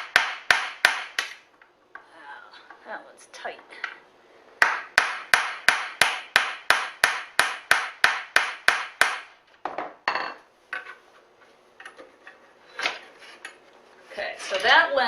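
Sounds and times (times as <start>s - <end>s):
hammer striking metal pin: 0.0s - 1.4s, 4.6s - 9.3s.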